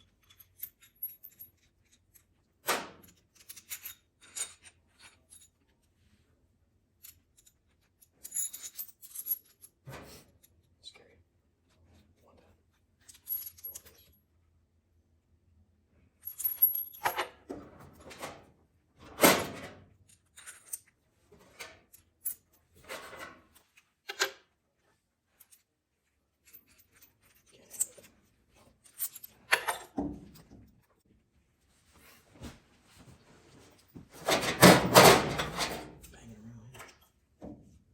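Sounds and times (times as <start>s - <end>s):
metal parts clinking: 0.0s - 2.3s, 2.9s - 5.6s, 7.0s - 9.8s, 13.0s - 14.2s, 16.2s - 17.3s, 19.2s - 20.9s, 21.6s - 24.4s, 28.8s - 30.0s, 34.2s - 37.1s.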